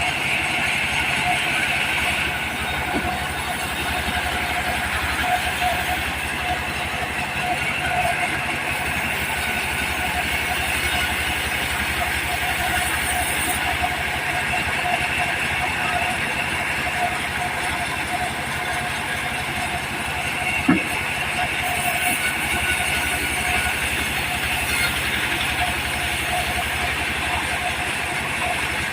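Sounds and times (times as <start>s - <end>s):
diesel engine running steadily: 0.0s - 28.9s
brief knock: 20.7s - 21.0s.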